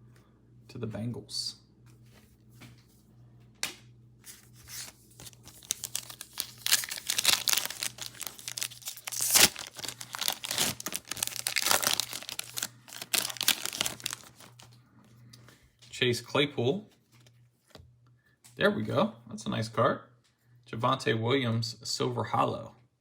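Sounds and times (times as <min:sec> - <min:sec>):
foil pack tearing and crinkling: 0:04.7 - 0:14.7.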